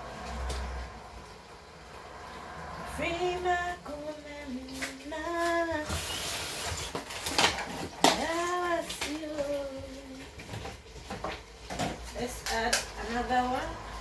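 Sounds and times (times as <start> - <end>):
person singing slow tune: 2.7 - 6.1.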